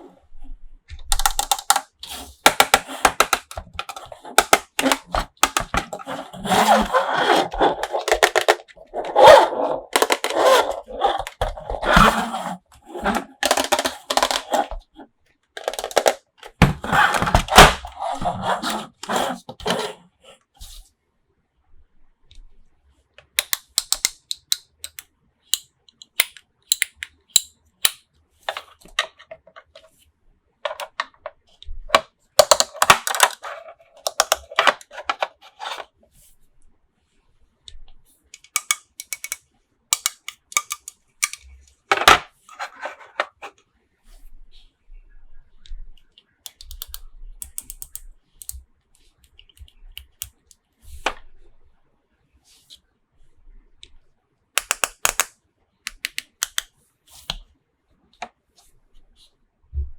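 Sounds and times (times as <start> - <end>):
plastic toys clicking and tapping: 1.0 - 6.1, 7.5 - 8.8, 9.9 - 10.5, 13.1 - 14.7, 15.6 - 17.9, 23.2 - 29.8, 31.9 - 35.3, 38.4 - 42.2, 46.5 - 48.6, 54.6 - 55.3, 55.9 - 56.7.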